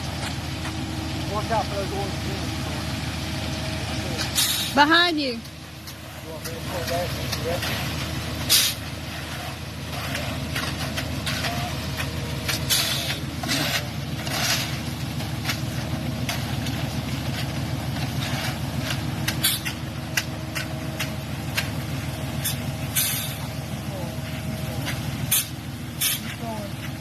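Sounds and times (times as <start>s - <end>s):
truck engine idling: 0.0s - 27.0s
scrapes and knocks: 5.8s - 23.4s.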